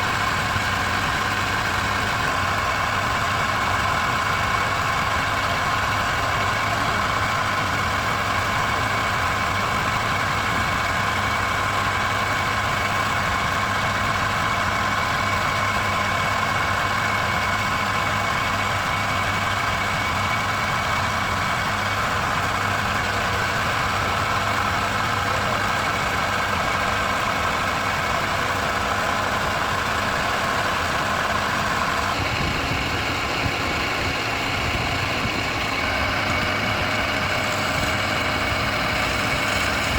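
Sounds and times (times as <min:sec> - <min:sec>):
motor humming: 0:31.2 - 0:39.9.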